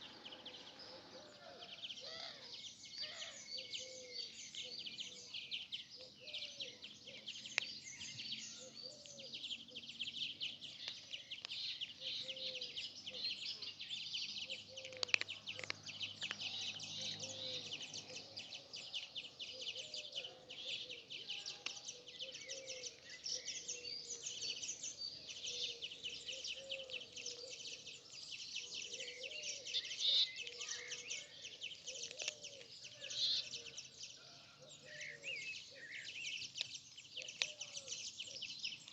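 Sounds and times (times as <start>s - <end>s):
small birds chirping: 0.0s - 38.9s
sharp clicks: 14.7s - 16.8s.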